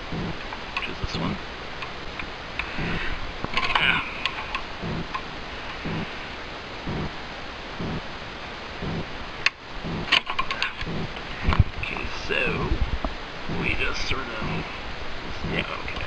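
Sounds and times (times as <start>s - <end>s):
clicks and metallic scraping: 3.4s - 5.2s, 9.4s - 12.0s.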